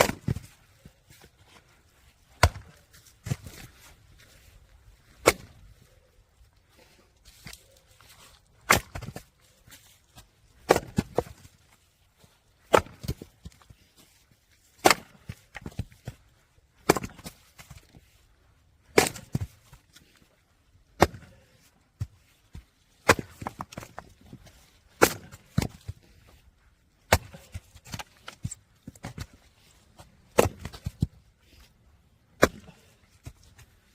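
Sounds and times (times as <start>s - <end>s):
logs cracking being split: 0.0s - 1.2s, 2.3s - 3.8s, 7.2s - 11.7s, 12.6s - 13.7s, 14.7s - 16.2s, 16.8s - 18.0s, 18.8s - 20.2s, 20.9s - 21.6s, 23.0s - 26.2s, 27.0s - 29.4s, 30.0s - 31.0s, 32.3s - 33.8s.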